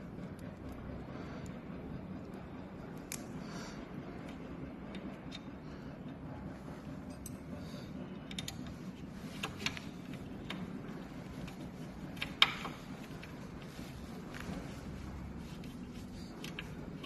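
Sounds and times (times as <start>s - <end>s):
low steady hum: 0.0s - 17.0s
hands handling wires clicking: 2.2s - 3.4s, 8.2s - 17.0s.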